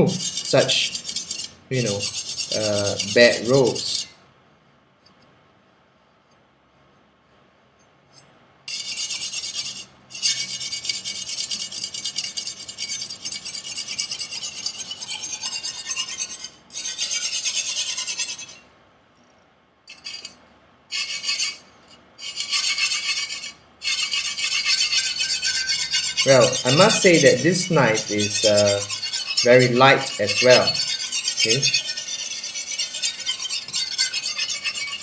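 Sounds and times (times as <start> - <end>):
knife scrubbing on sharpening stone: 0.0 - 4.1, 8.7 - 18.6, 20.9 - 21.6, 22.2 - 35.0.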